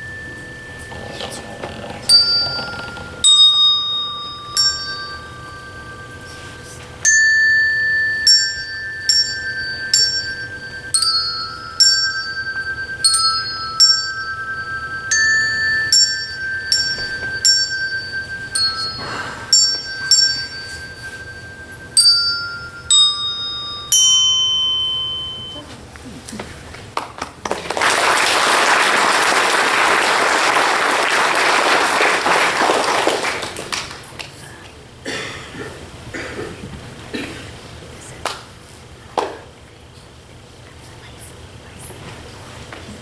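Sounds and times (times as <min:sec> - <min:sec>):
handbells ringing slow tune: 0:00.0 - 0:25.7.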